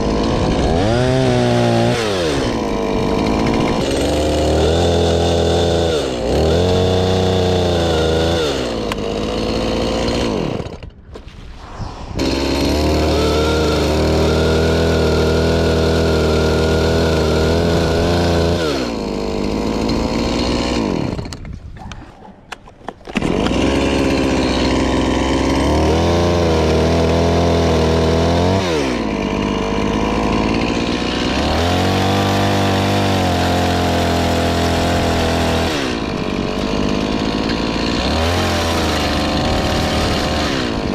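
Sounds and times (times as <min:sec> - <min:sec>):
chainsaw cutting at high revs: 0:00.0 - 0:11.0, 0:12.1 - 0:21.5, 0:22.9 - 0:40.9.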